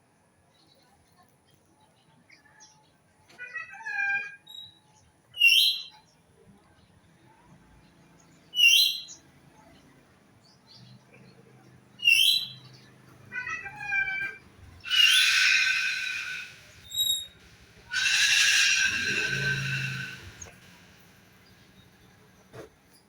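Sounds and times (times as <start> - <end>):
loud harsh bird call: 12.0 - 12.8, 13.4 - 22.0
sharp high bird call: 13.5 - 21.1
thin bird chirps: 14.8 - 22.1.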